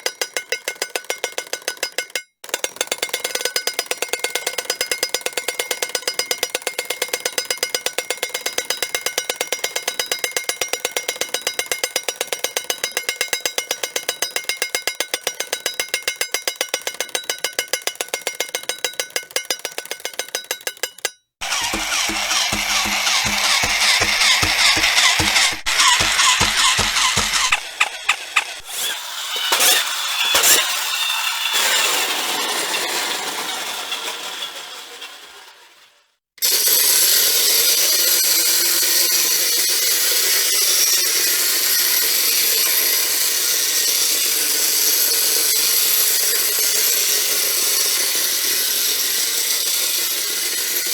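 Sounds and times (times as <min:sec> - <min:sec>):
mechanical toy clicking with ring: 0:00.0 - 0:28.8
toy motor whirring and rattling: 0:16.2 - 0:35.6, 0:36.4 - 0:50.9
clacks: 0:19.4 - 0:30.7.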